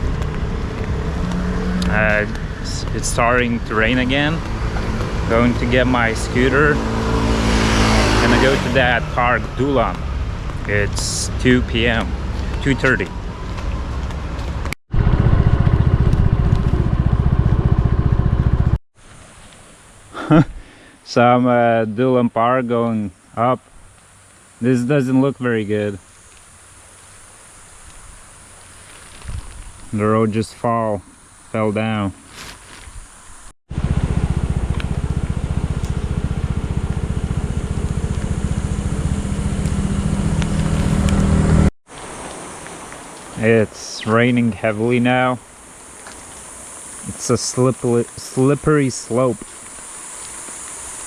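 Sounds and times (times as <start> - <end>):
scooter engine running: 0.0 - 18.8, 33.7 - 41.7.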